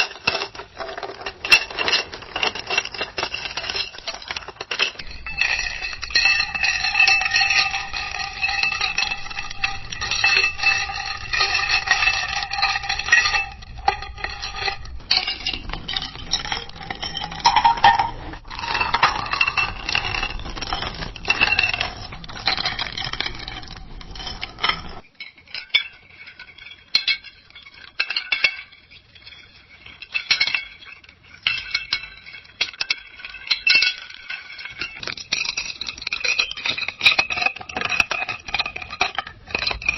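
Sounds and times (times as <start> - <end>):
glass ringing: 1.4 - 39.9
ice cubes clinking in a glass: 1.5 - 25.0.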